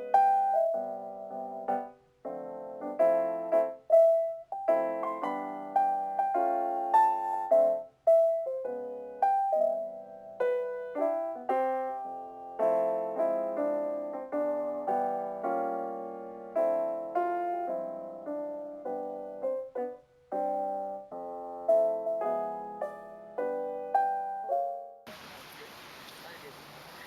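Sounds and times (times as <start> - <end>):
gentle solo piano music: 0.0 - 25.1.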